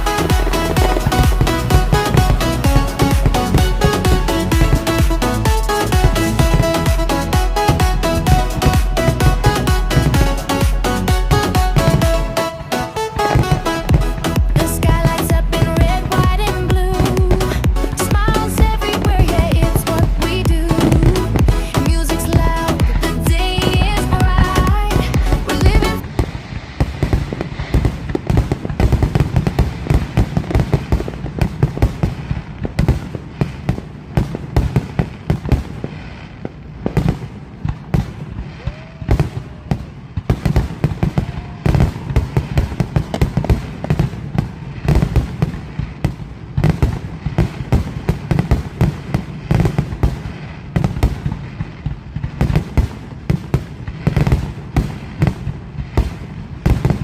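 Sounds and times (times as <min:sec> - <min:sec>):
deep firework booms: 0:00.0 - 0:57.0
firework shells bursting and crackling: 0:00.0 - 0:57.0.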